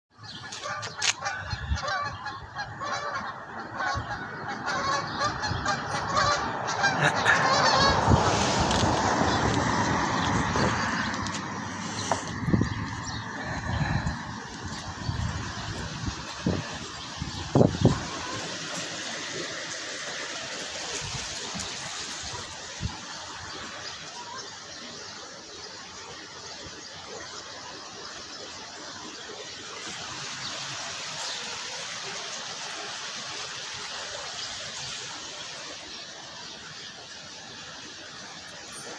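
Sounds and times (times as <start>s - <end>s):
flowing water: 0.1s - 38.9s
geese honking: 0.2s - 26.2s
rushing noise: 4.6s - 23.9s.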